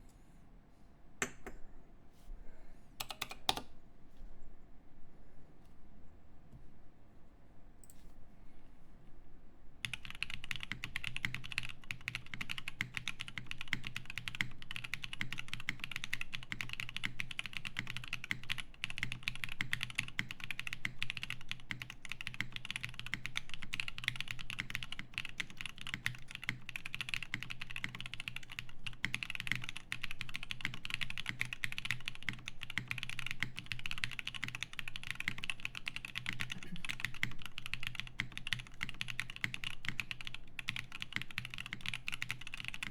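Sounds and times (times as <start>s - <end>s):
typing on mechanical keyboard: 3.0s - 3.7s, 9.8s - 42.9s.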